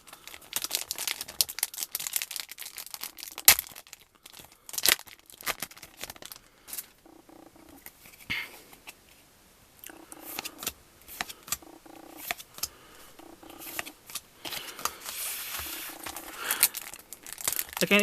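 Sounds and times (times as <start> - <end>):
foil wrapper crinkling: 0.0 - 7.0, 13.5 - 18.0
soft low hum: 6.2 - 17.8
trading cards clicking and snapping: 10.2 - 16.8.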